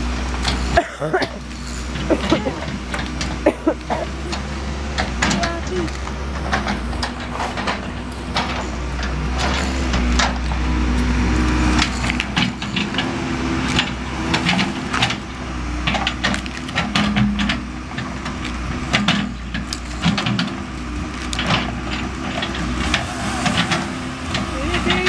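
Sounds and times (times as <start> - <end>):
backhoe engine humming: 0.0 - 25.0
wood cracking and splintering: 11.4 - 25.0.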